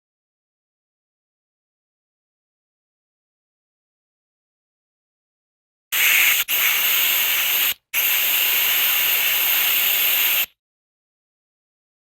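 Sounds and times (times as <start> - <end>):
loud steady hiss: 6.0 - 10.5.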